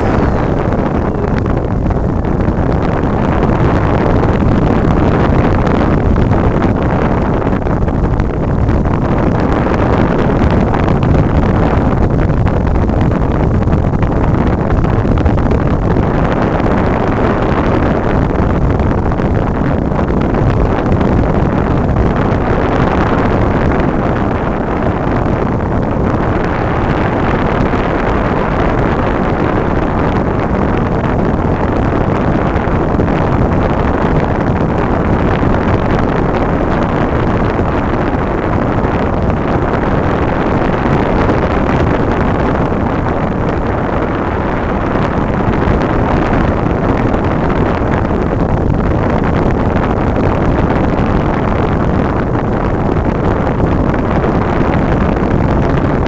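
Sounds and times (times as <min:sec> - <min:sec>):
wind rushing over microphone: 0:00.0 - 0:56.0.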